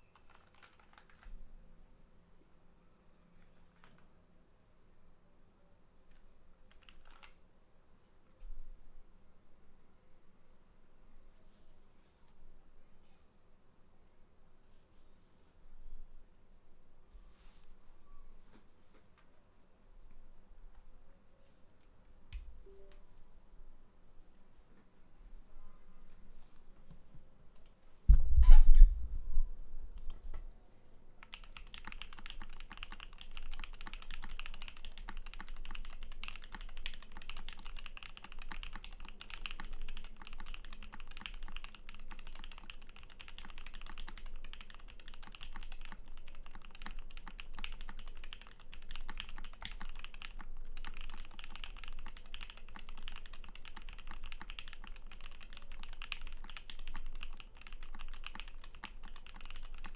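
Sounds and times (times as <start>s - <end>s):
fast mechanical keyboard typing: 0.0s - 1.3s, 6.1s - 7.4s, 31.2s - 59.9s.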